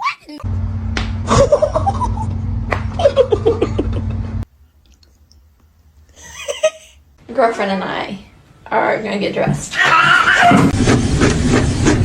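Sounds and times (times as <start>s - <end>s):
steady low hum: 0.4s - 4.5s
person laughing: 1.2s - 4.4s, 6.2s - 7.0s.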